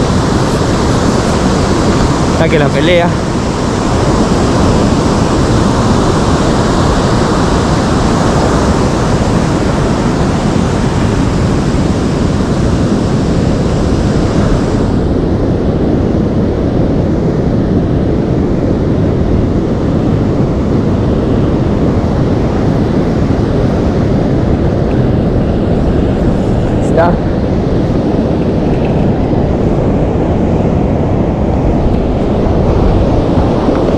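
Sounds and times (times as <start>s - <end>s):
ocean surf: 0.0s - 33.9s
wind on microphone: 0.0s - 33.9s.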